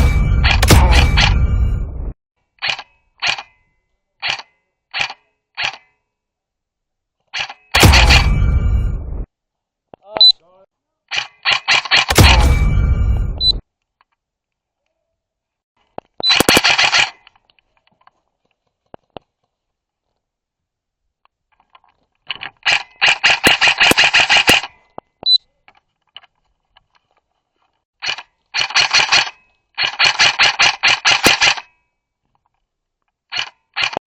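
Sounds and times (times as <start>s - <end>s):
airsoft rifle full-auto bursts: 16.3s - 17.3s, 22.7s - 24.7s, 28.0s - 31.7s.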